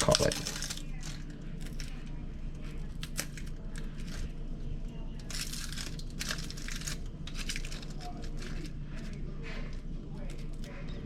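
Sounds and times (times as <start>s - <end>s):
onion skin crinkling and tearing: 0.0s - 10.7s.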